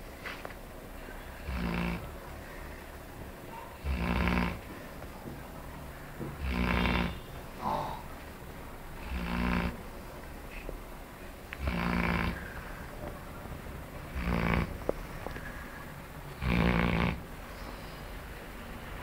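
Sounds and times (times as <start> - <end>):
dog snoring: 1.3 - 2.2, 3.8 - 4.7, 6.3 - 8.0, 9.0 - 9.9, 11.6 - 12.6, 14.1 - 14.9, 16.4 - 17.3.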